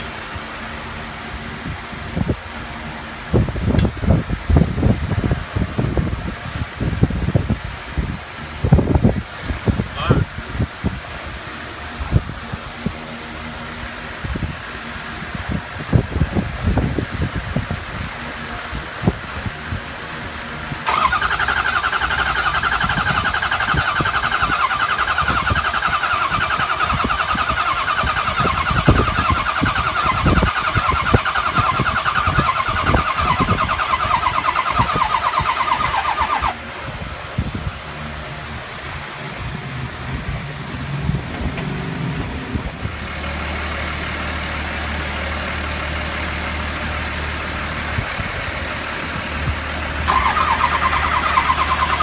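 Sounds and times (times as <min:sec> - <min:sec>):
starter motor cranking engine: 0:13.0 - 0:36.9, 0:43.2 - 0:52.0.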